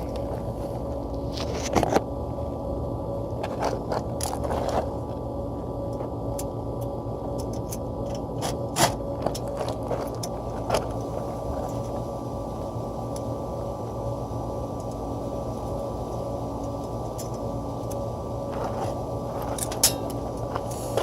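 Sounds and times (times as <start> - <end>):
mechanical hum: 0.0 - 21.0
metal washers and nuts clinking: 16.8 - 21.0.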